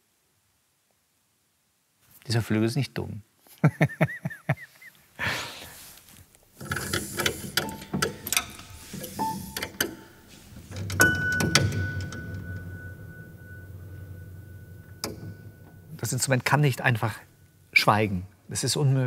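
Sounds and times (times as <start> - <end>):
piano mechanism clicks and knocks: 6.6 - 16.3
steady high tone: 11.0 - 18.1.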